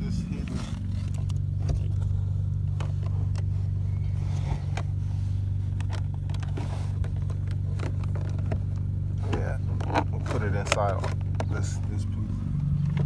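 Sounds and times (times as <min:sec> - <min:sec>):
car engine idling: 0:00.0 - 0:13.0
wire and plastic trim rustling: 0:05.7 - 0:12.1.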